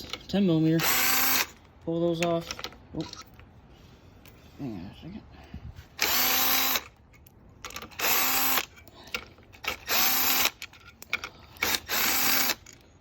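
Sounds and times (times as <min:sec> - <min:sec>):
power drill whining: 0:00.8 - 0:01.6, 0:06.0 - 0:06.9, 0:07.9 - 0:08.7, 0:09.6 - 0:10.6, 0:11.6 - 0:12.8.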